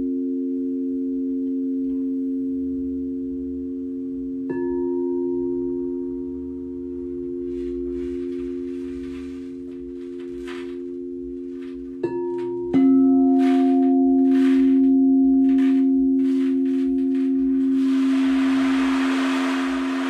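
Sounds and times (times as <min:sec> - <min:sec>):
singing bowls ringing: 0:04.4 - 0:20.0.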